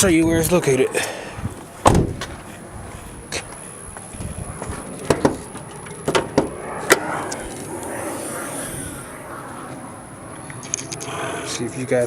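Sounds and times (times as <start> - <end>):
sharp knocks and clicks: 5.0 - 7.0.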